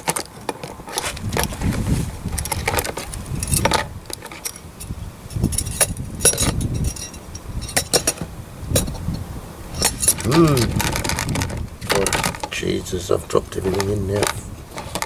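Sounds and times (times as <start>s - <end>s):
metal parts clinking in liquid: 2.4s - 8.2s, 9.8s - 12.4s.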